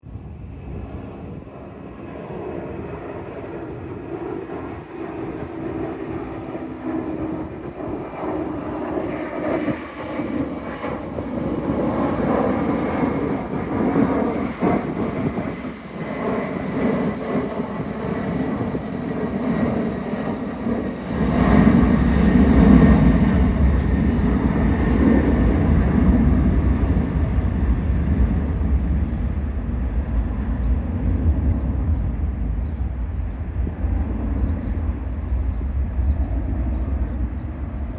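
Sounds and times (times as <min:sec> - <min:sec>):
jet engines running: 0:00.0 - 0:37.9
deep rumble: 0:21.7 - 0:37.9.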